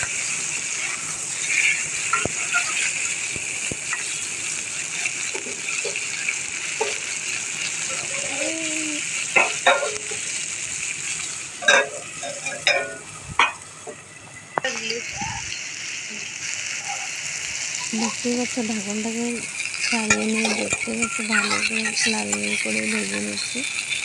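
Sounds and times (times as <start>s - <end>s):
vegetables sizzling in oil: 0.0s - 24.0s
utensil knocking against pan: 9.4s - 10.0s.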